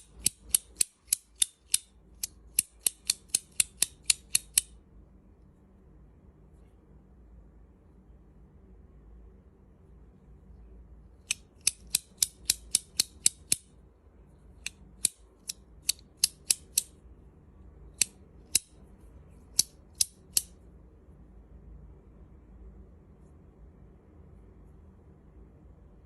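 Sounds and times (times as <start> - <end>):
metal fidget toy clicking: 0.0 - 4.8, 11.2 - 13.7, 14.6 - 16.9, 18.0 - 18.8, 19.5 - 20.6.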